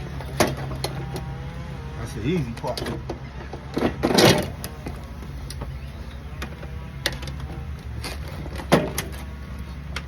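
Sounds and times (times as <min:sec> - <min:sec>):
metal scraping and rattling: 0:02.0 - 0:05.6, 0:06.3 - 0:10.0.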